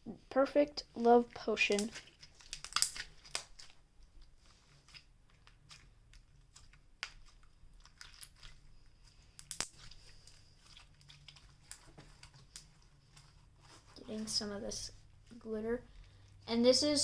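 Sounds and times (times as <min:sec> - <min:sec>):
small clicks and crackles: 0:01.3 - 0:14.1
slime squished by hand: 0:01.5 - 0:14.3.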